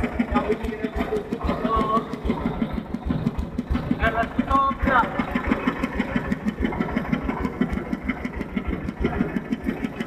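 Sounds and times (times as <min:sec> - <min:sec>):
engine running with rapid beat: 0:00.0 - 0:10.0.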